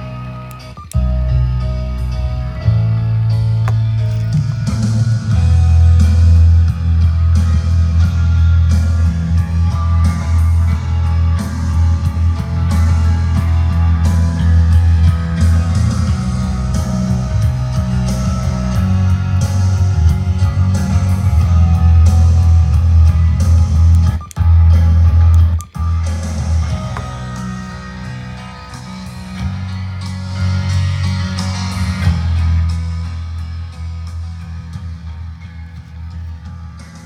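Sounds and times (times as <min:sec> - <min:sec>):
guitar rock music through speakers: 0:00.0 - 0:37.0.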